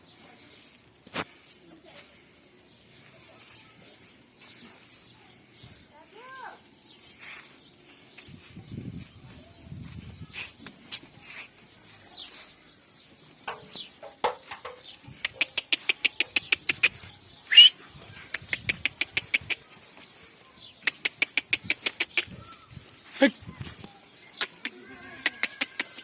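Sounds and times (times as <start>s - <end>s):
bird calling in sharp clicks: 15.2s - 17.7s, 18.3s - 19.6s, 20.8s - 22.4s, 24.4s - 26.0s
short rising bird call: 17.5s - 17.8s.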